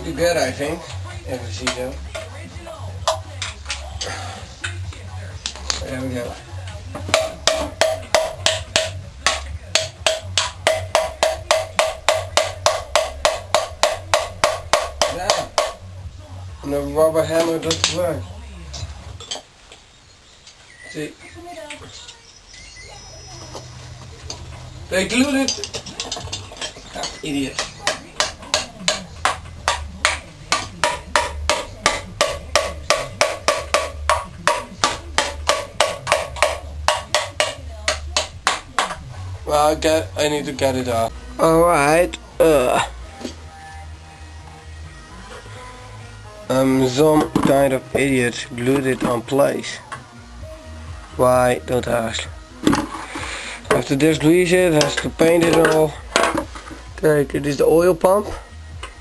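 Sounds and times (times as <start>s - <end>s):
rubber mallet striking metal pan: 7.0s - 15.8s, 25.4s - 39.0s, 52.6s - 54.0s, 54.8s - 56.7s.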